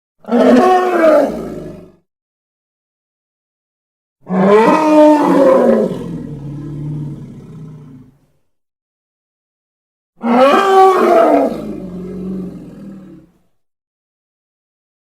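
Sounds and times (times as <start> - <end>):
creature roar sound effect: 0.2 - 1.9, 4.3 - 8.1, 10.2 - 13.3.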